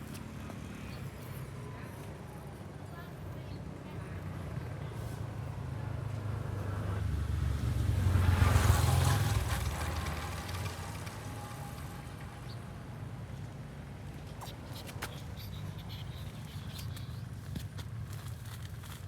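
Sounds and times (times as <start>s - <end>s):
vehicle passing by: 5.2s - 12.6s.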